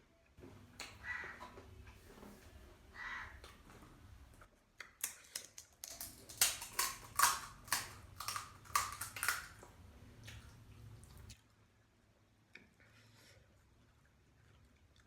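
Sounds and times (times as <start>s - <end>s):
crisp food crunching: 4.8s - 11.3s.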